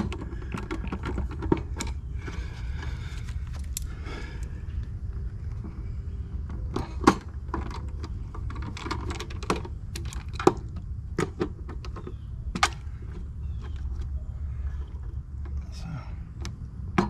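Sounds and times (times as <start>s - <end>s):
steady low rumble: 0.0s - 17.0s
clicks of wire connectors: 3.2s - 3.9s.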